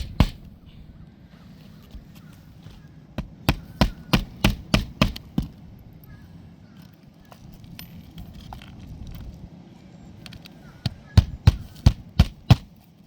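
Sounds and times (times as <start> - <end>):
hammer striking roofing nail: 0.0 - 0.5, 3.2 - 5.6, 10.8 - 12.7.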